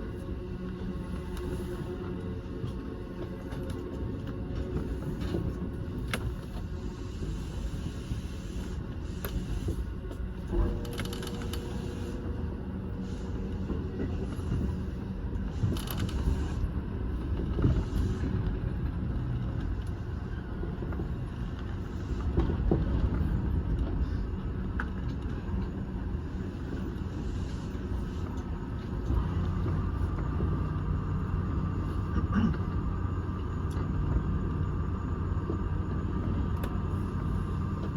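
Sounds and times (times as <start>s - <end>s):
train wheels rumbling on rail: 0.0s - 37.9s.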